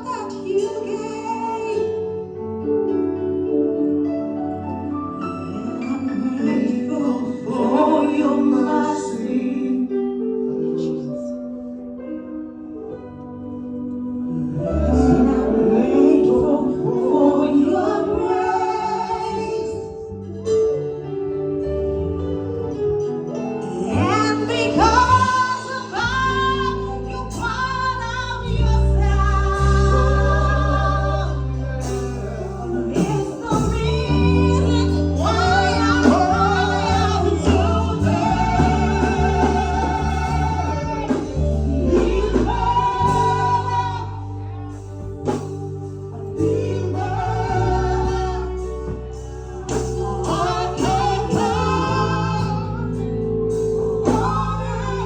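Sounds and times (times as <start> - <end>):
woman singing: 0.0 - 2.2, 5.8 - 11.2, 14.0 - 20.0, 23.6 - 55.0
sustained keyboard chords: 0.0 - 55.0
bass line: 13.3 - 20.5, 21.4 - 55.0.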